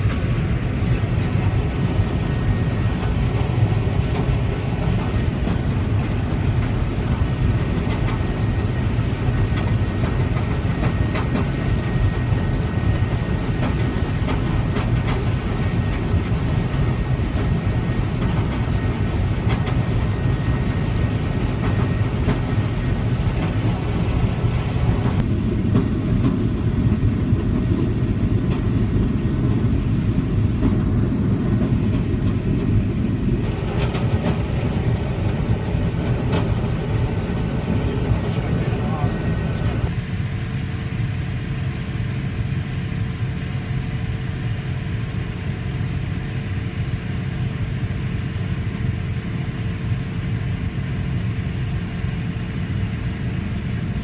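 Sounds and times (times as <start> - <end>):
machinery rattling clatter: 0.0 - 39.9
low engine rumble: 0.0 - 54.0.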